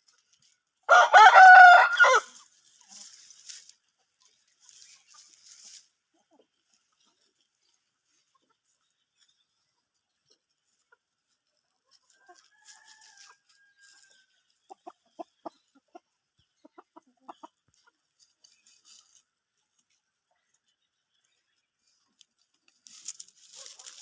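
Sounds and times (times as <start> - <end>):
chickens clucking: 0.0 - 1.7, 2.3 - 24.0
faint rooster crow: 0.9 - 2.3, 12.2 - 14.3.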